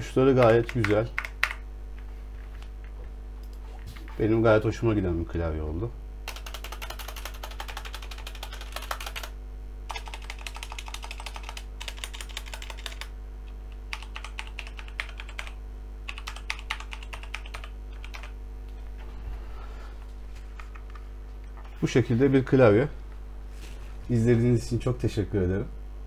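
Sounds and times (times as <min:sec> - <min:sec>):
steady low hum: 0:00.0 - 0:26.0
mechanical keyboard typing: 0:00.3 - 0:01.6, 0:06.2 - 0:13.1, 0:13.9 - 0:18.4.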